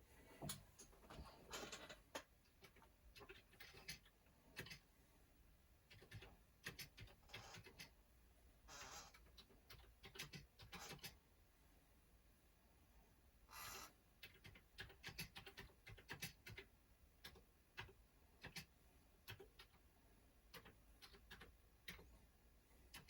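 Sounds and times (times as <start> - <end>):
keyboard keys clicking: 20.5 - 22.0.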